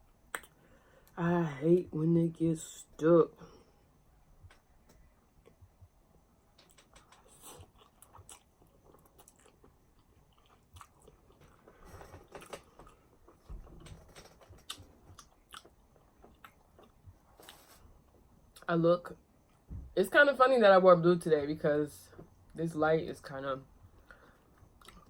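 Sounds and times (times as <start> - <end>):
person chewing: 6.7 - 13.4, 14.6 - 17.8, 24.8 - 25.0.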